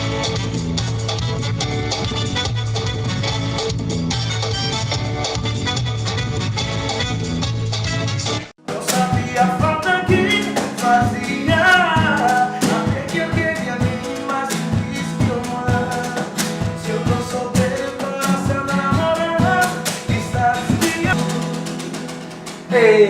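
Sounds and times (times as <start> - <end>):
guitar: 0.0 - 23.0
steady drum beat: 8.6 - 22.8
male vocal: 8.7 - 22.0, 22.7 - 23.0.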